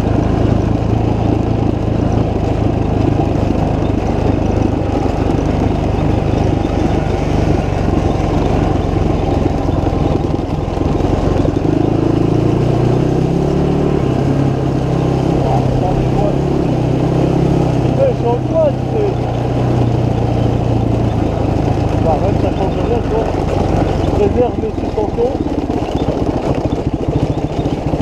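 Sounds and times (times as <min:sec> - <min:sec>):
motorcycle engine running: 0:00.0 - 0:28.0.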